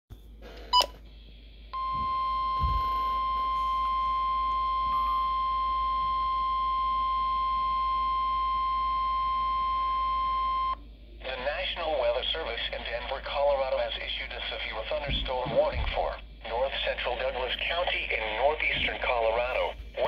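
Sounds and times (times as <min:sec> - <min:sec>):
steady alarm tone: 0:01.8 - 0:10.8
faint radio hiss: 0:10.8 - 0:20.0.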